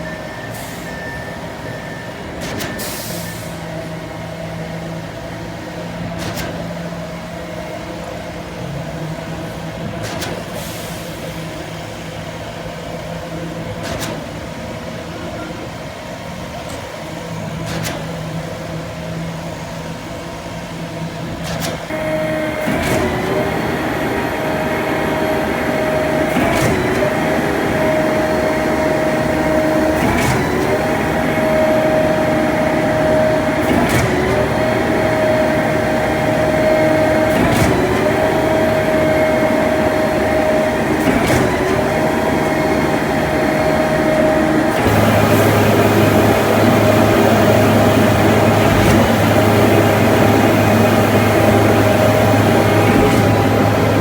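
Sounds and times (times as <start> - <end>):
concrete pump running: 0.0 - 54.0
pump stroke clunk: 21.4 - 54.0.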